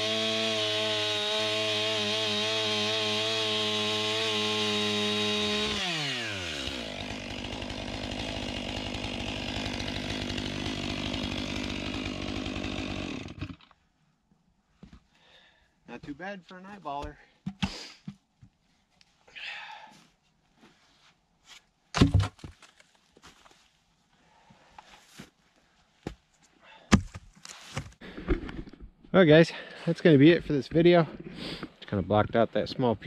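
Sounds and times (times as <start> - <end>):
chainsaw engine: 0.0 - 13.7.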